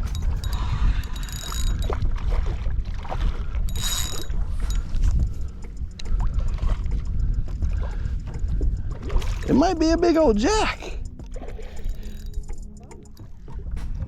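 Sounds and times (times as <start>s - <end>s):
fishing reel ratcheting: 0.0s - 2.1s, 3.7s - 6.3s, 10.3s - 13.2s
steady low rumble: 0.0s - 14.0s.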